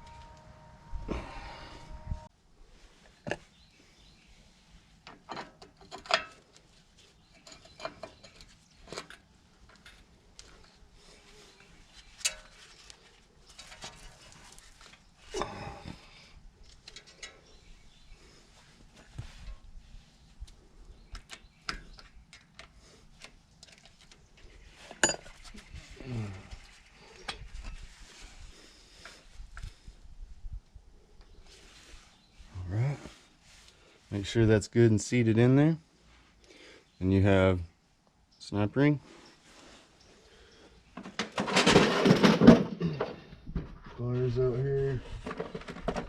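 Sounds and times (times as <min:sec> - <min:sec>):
low falling sound: 0:00.0 - 0:02.3
metal parts clicking and scraping: 0:12.1 - 0:14.9.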